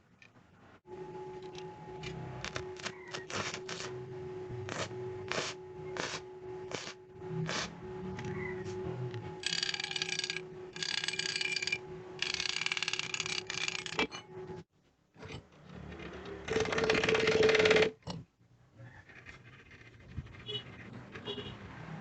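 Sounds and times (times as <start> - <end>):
drill press motor humming: 1.0 - 14.6
drill bit cutting steel: 9.4 - 14.0.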